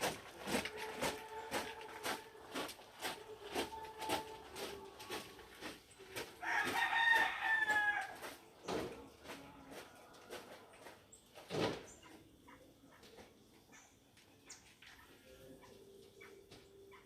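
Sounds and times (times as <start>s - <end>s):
rooster crowing: 6.4s - 8.3s.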